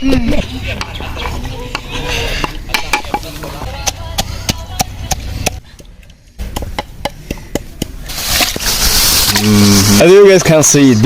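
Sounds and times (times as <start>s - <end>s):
hiss: 8.0s - 10.0s.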